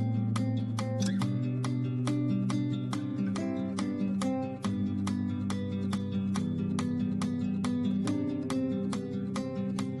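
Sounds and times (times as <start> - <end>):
strummed guitar music: 0.0 - 10.0.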